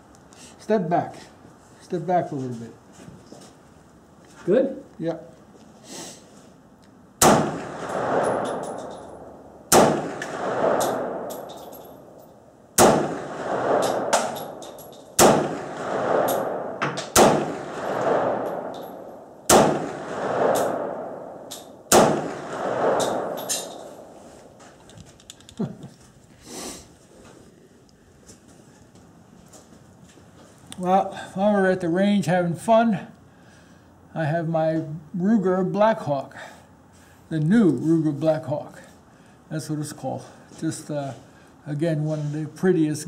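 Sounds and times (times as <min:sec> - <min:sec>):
pistol shots with rolling echo: 0:07.2 - 0:12.2, 0:12.8 - 0:24.2.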